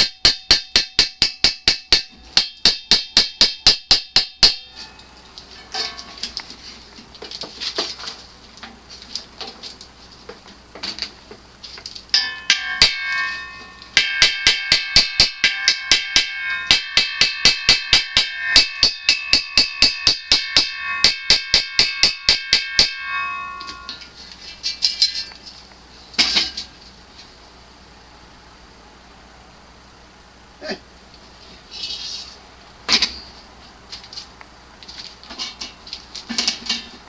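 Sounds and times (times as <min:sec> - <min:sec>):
hammer striking steel: 0:00.0 - 0:05.1, 0:05.7 - 0:06.3, 0:12.1 - 0:24.2.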